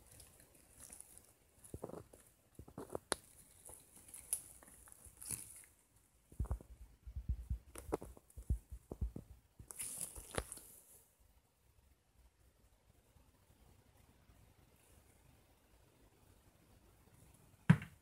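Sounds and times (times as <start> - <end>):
rustling: 0.0 - 11.1.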